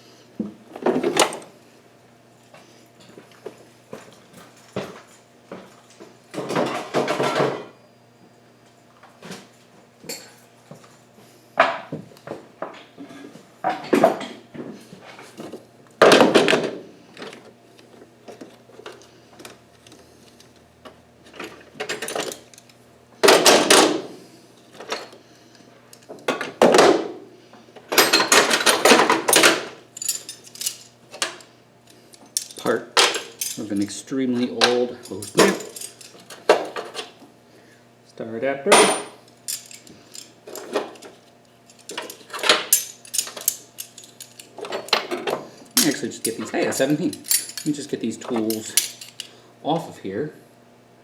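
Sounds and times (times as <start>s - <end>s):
metal tools clinking and clattering: 27.9s - 31.4s, 32.2s - 33.9s, 34.6s - 37.1s, 38.8s - 49.3s.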